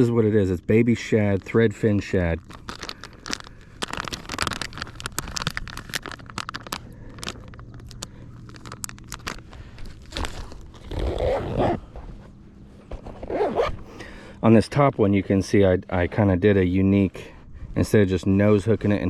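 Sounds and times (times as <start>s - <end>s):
handling clicks and scrapes: 2.4s - 13.8s.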